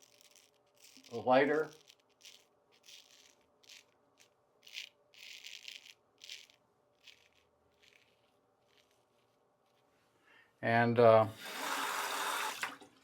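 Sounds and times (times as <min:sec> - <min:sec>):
razor scraping stubble: 0:00.0 - 0:09.9.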